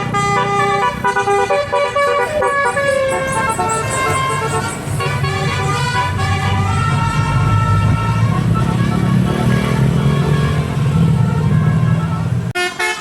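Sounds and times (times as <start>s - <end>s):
bus engine running: 0.0s - 13.0s
musical bus horn playing a tune: 0.0s - 13.0s.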